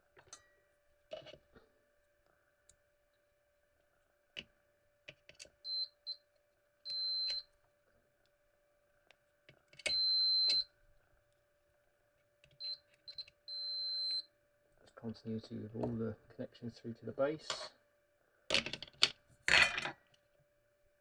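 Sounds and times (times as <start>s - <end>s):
multimeter beeping: 5.6s - 6.2s, 6.9s - 7.5s, 9.8s - 10.7s, 12.6s - 14.3s.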